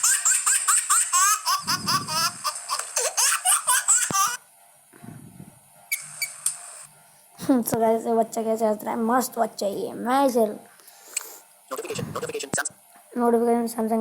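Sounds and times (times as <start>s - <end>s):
baby giggling: 0.0s - 4.4s.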